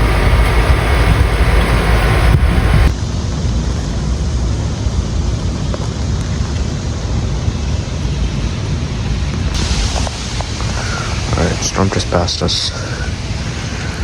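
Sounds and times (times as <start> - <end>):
rain hissing: 0.0 - 2.9, 9.4 - 14.0
wind buffeting microphone: 0.0 - 2.9.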